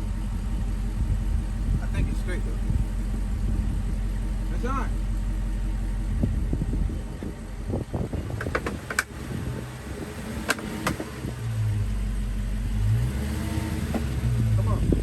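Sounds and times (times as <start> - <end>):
car engine idling: 0.0 - 15.0
knocking: 8.4 - 9.1.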